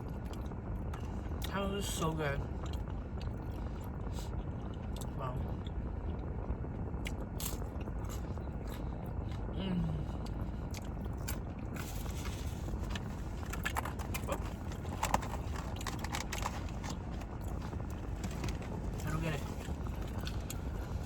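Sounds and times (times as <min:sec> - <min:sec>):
chewing and crunching food: 0:00.0 - 0:21.0
low background rumble: 0:00.0 - 0:21.0.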